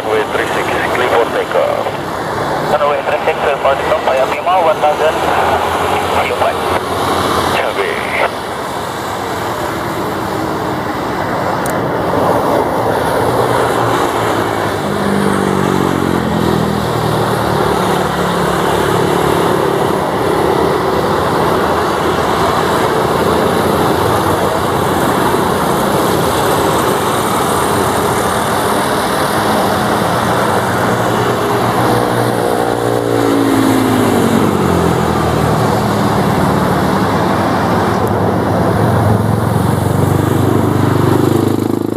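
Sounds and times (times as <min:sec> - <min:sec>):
turboprop propeller drone: 0:00.0 - 0:41.9.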